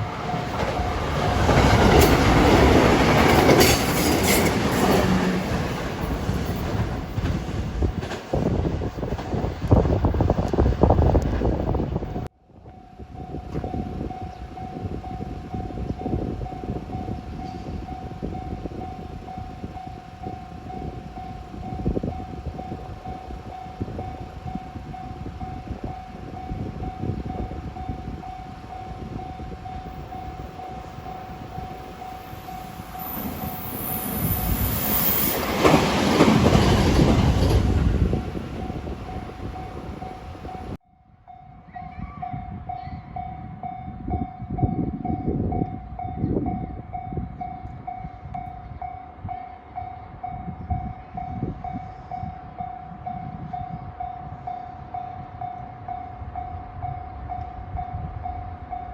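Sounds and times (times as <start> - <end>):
electric train passing: 0.0 - 40.8.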